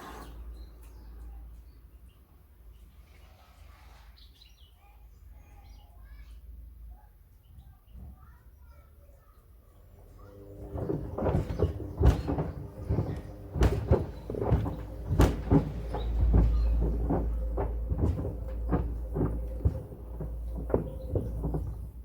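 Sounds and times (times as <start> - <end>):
washing machine motor hum: 9.8 - 22.0
low rumble: 10.5 - 22.0
wood knocking in washing machine drum: 10.5 - 22.0.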